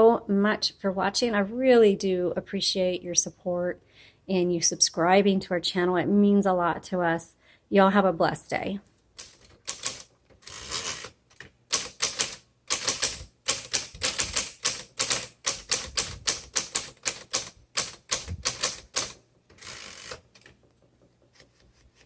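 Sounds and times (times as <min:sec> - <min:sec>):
typewriter keys clacking: 0:09.2 - 0:11.1, 0:11.7 - 0:20.6.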